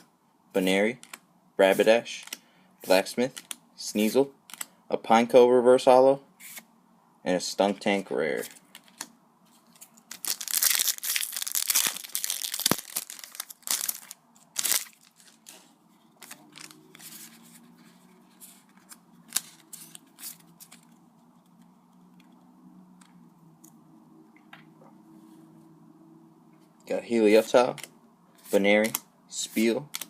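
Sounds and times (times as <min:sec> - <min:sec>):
cards clicking and rustling: 0:00.9 - 0:01.2, 0:01.8 - 0:02.4, 0:03.3 - 0:03.6, 0:04.4 - 0:04.8, 0:08.4 - 0:21.7, 0:27.6 - 0:30.0
foil wrapper tearing and crinkling: 0:09.9 - 0:16.8.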